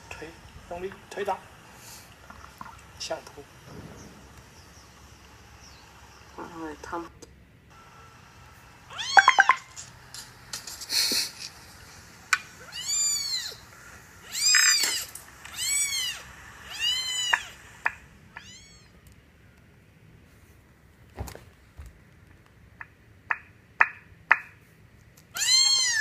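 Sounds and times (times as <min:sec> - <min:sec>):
short hissy burst: 0:00.0 - 0:07.1, 0:07.7 - 0:18.9
cat meowing: 0:08.9 - 0:09.6, 0:12.6 - 0:13.6, 0:14.2 - 0:17.6, 0:18.3 - 0:19.0, 0:25.3 - 0:26.0.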